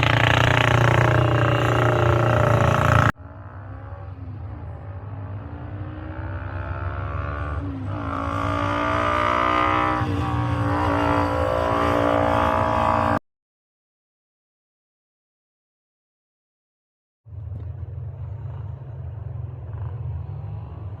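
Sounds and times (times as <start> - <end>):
race car engine at full throttle: 0.0 - 13.2.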